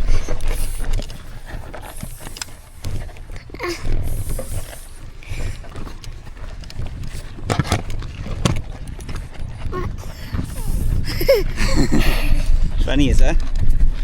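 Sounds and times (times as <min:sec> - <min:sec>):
bike knocking and clattering: 0:00.0 - 0:09.8
footsteps on rough trail: 0:00.0 - 0:14.0
wind rumble on microphone: 0:00.0 - 0:14.0.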